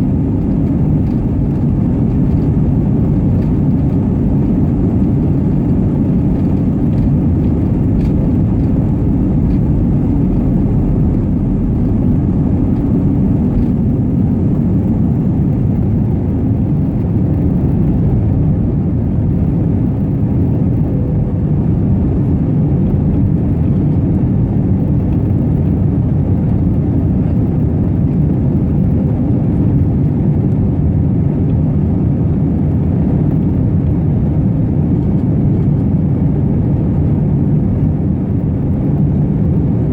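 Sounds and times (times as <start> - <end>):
rushing air: 0.0 - 26.9
jet engine rumble in cabin: 0.0 - 39.9.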